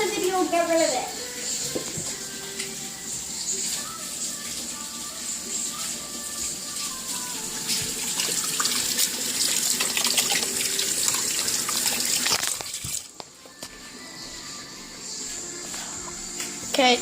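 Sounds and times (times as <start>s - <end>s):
tap water running into sink: 1.6s - 2.8s, 3.6s - 13.2s.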